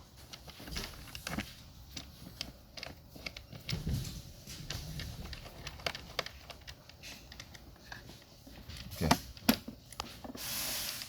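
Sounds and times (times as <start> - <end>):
brief rustling hiss: 10.4 - 11.0.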